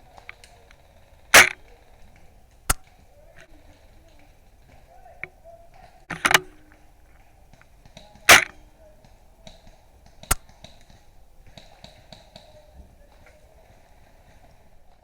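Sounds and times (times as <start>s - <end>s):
airsoft rifle shot: 0.2s - 3.0s, 4.7s - 6.9s, 7.8s - 13.8s
sharp click: 1.4s - 1.6s, 6.1s - 6.6s, 8.3s - 8.6s.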